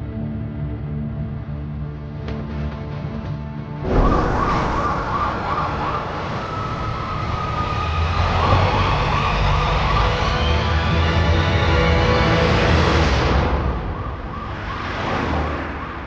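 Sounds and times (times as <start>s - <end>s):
loud vehicle noise: 3.8s - 16.0s
police siren wailing: 3.8s - 16.0s.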